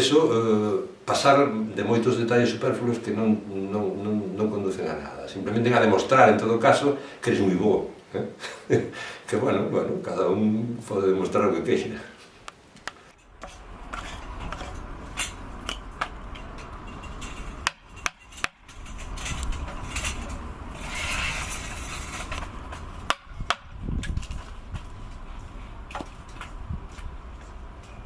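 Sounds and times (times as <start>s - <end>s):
low background noise: 0.0s - 28.0s.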